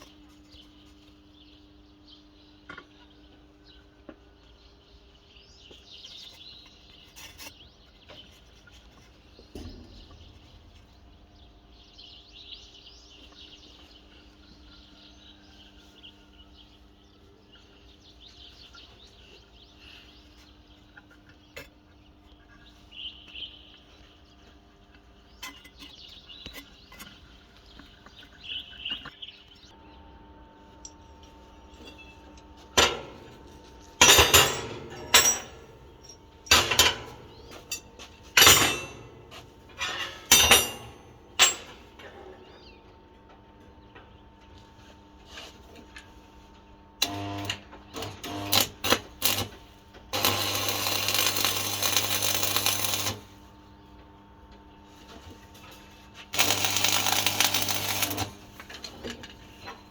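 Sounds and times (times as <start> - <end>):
birds chirping: 0.0 - 45.1
steel pieces clanking together: 31.8 - 42.2, 56.4 - 59.9.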